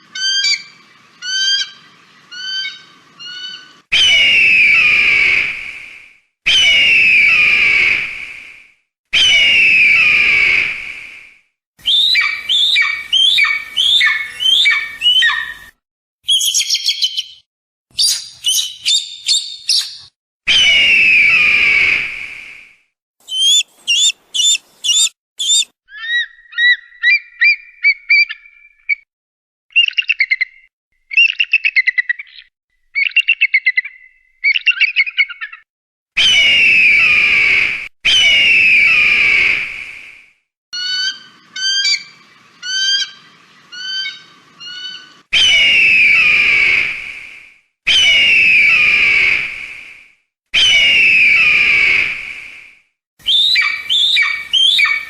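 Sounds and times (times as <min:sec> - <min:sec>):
shrill bird chirps and whistles: 0:00.2 - 0:05.5, 0:06.5 - 0:08.0, 0:09.2 - 0:10.8, 0:11.8 - 0:22.0, 0:23.2 - 0:29.0, 0:29.7 - 0:39.6, 0:40.8 - 0:46.9, 0:47.9 - 0:49.4, 0:50.6 - 0:52.1, 0:53.2 - 0:55.0
hoarse falling bird screams: 0:00.2 - 0:05.7, 0:06.5 - 0:08.1, 0:09.2 - 0:10.8, 0:20.5 - 0:22.3, 0:23.3 - 0:25.7, 0:36.2 - 0:39.9, 0:40.8 - 0:47.3, 0:47.9 - 0:49.7, 0:50.6 - 0:52.4.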